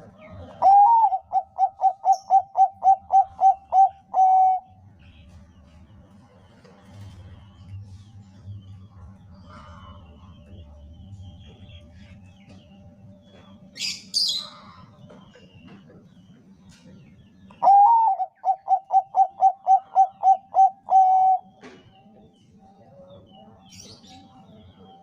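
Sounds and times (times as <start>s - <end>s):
dove cooing song: 0.0s - 5.4s, 9.4s - 22.3s.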